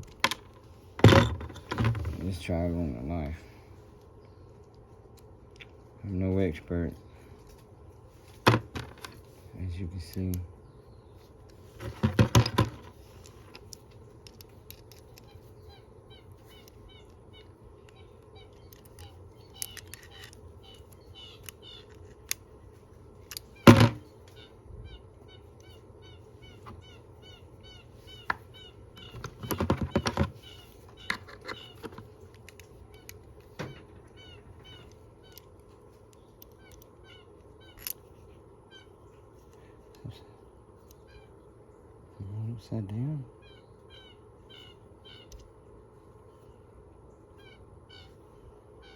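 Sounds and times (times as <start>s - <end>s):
clicks and knocks handling a multitool: 11.4s - 15.5s, 16.6s - 22.5s, 23.2s - 23.9s, 29.0s - 33.6s, 34.6s - 36.9s, 37.7s - 38.0s
faint chirping: 13.0s - 22.4s, 23.2s - 48.9s.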